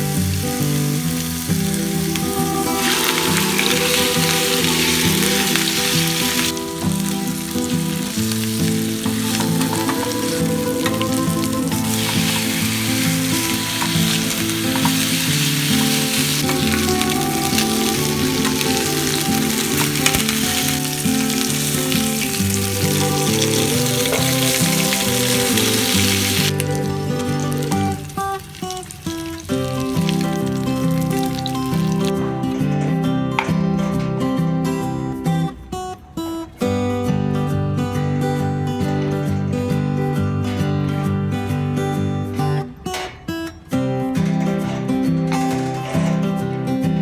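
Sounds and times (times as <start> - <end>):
meat sizzling in a pan: 0.0 - 32.3
background music: 0.0 - 35.7.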